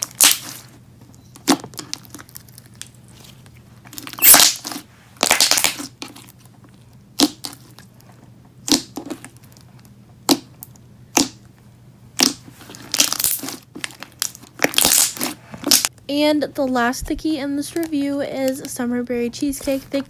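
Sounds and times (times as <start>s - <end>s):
crackly slime stretch: 0.0s - 11.5s, 12.2s - 15.9s.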